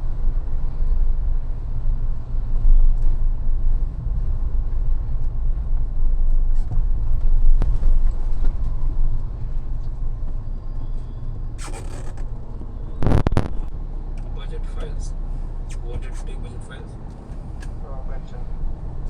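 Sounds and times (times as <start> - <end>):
road and engine rumble: 0.0 - 19.0.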